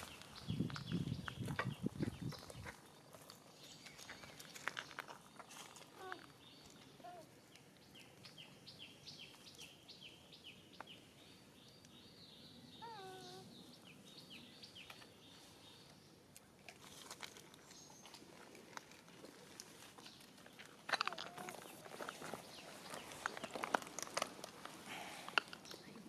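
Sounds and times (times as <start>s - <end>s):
bird chirping: 0.0s - 16.2s.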